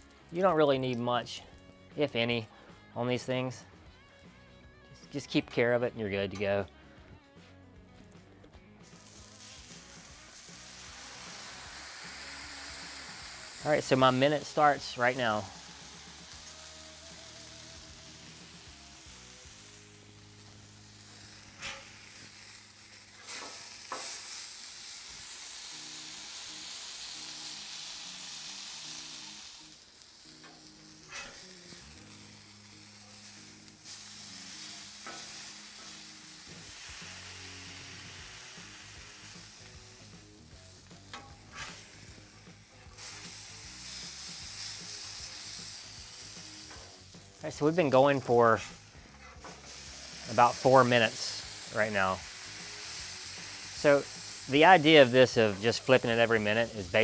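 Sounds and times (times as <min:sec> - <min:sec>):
steak sizzling on griddle: 0:00.0 - 0:05.4, 0:08.6 - 0:57.0
low background music: 0:00.0 - 0:57.0
metal spatula scraping: 0:21.5 - 0:22.1, 0:23.1 - 0:24.2, 0:30.4 - 0:31.7, 0:35.0 - 0:36.0, 0:41.1 - 0:44.0, 0:48.2 - 0:51.3.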